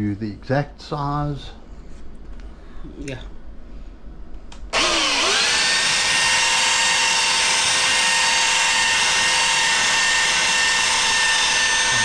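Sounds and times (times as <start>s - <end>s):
electric sander whining: 4.8s - 12.0s.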